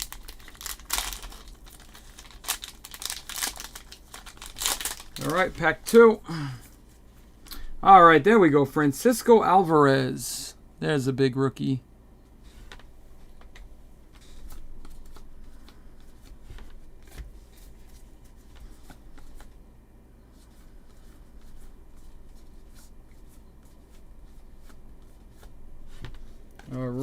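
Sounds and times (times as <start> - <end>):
cards flipped with papery rustle: 0.0 - 6.0, 12.6 - 19.6.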